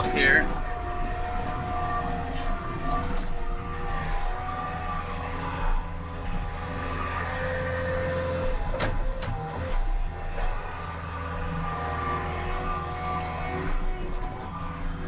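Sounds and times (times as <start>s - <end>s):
diesel engine running: 0.0s - 15.0s
held whining tones: 0.0s - 15.0s.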